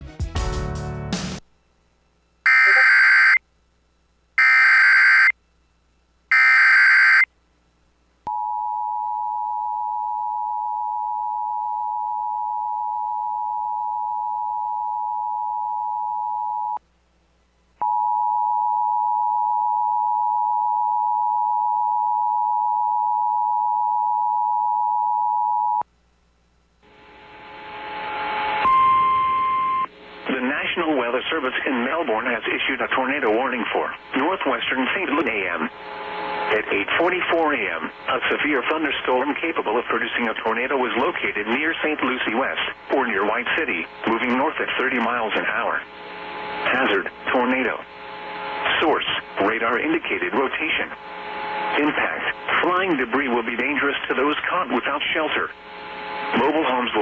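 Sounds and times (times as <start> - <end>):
high steady alert tone: 2.5 - 3.4, 4.4 - 5.3, 6.3 - 7.2
two-tone attention signal: 2.5 - 3.4, 4.4 - 5.3, 6.3 - 7.2
weather radio audio: 2.5 - 3.4, 4.4 - 5.3, 6.3 - 7.2, 30.3 - 46.0, 46.6 - 47.9, 48.5 - 55.5, 56.2 - 57.0.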